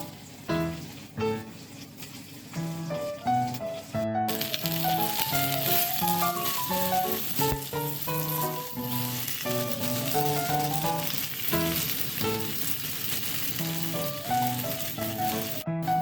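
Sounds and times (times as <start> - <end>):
food sizzling in a pan: 0.0 - 16.0
background music with held notes: 2.6 - 12.4, 13.6 - 16.0.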